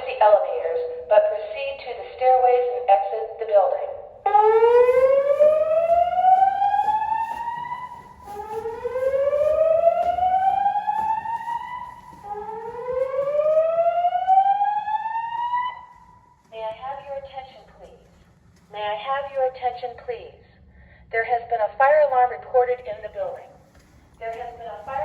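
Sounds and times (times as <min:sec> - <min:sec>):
fire alarm whoop tone: 0:04.3 - 0:16.3.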